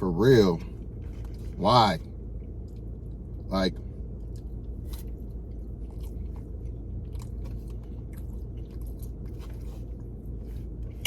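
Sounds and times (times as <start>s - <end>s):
low steady hum: 0.0s - 11.0s
man chewing food: 2.2s - 11.0s.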